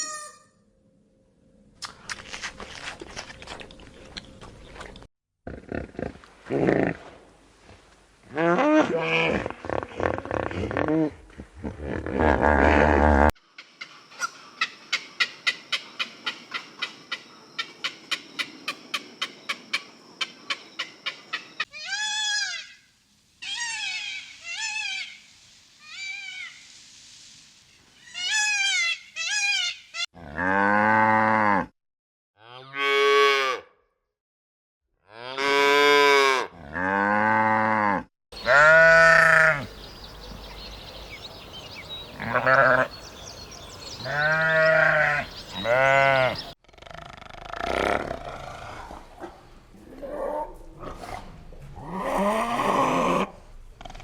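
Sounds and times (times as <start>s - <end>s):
short high calls: 0.0s - 0.6s.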